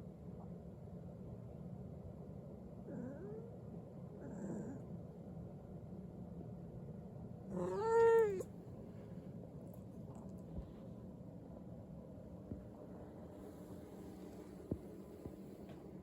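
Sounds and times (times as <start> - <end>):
cat meowing: 7.5 - 8.5.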